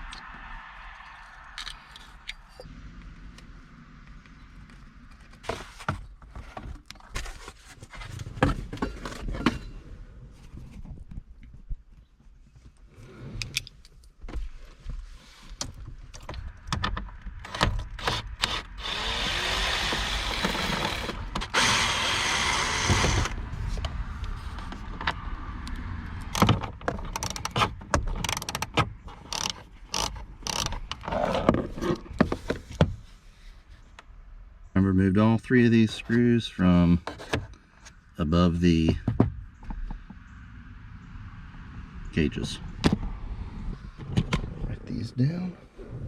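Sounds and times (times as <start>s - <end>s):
steady rasping noise: 17.9s - 23.4s.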